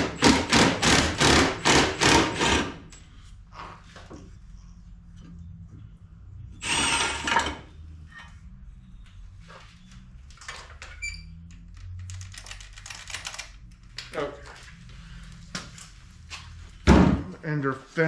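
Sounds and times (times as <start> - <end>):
low steady rumble: 3.1 - 6.6.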